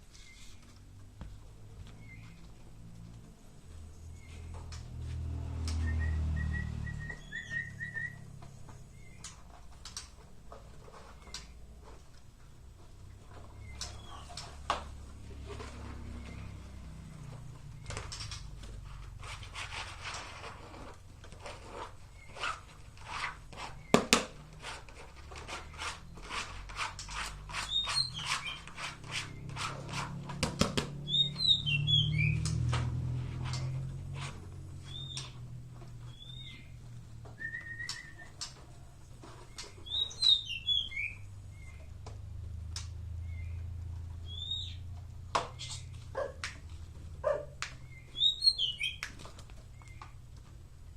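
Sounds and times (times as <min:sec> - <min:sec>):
rubbing or scraping strokes: 0:00.0 - 0:00.8, 0:18.6 - 0:30.5, 0:32.6 - 0:34.9
songbird chirping: 0:00.1 - 0:18.6, 0:27.6 - 0:28.7, 0:30.9 - 0:32.7, 0:34.7 - 0:46.6, 0:47.2 - 0:50.6.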